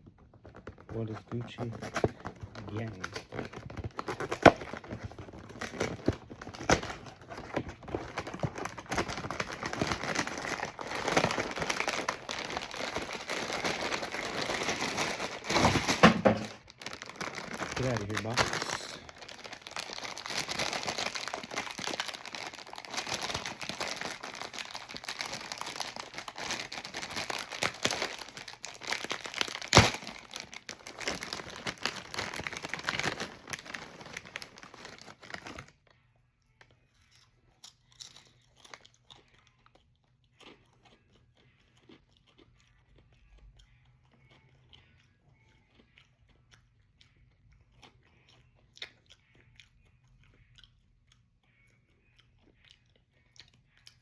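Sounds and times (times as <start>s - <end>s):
crackers being chewed: 0.0s - 16.0s, 16.6s - 54.0s
plastic bag crinkling: 0.4s - 35.7s
bag popping: 5.7s - 18.8s, 27.2s - 33.1s.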